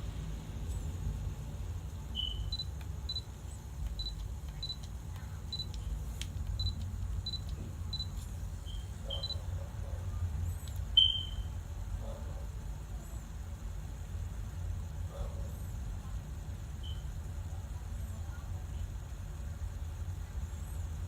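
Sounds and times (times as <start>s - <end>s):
camera beeps: 2.2s - 3.3s, 3.9s - 4.9s, 5.5s - 5.8s, 6.6s - 9.4s, 11.0s - 11.5s.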